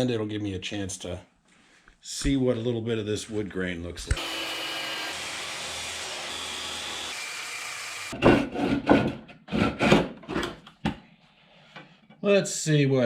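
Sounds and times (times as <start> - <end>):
saw cutting wood: 4.1 - 10.1.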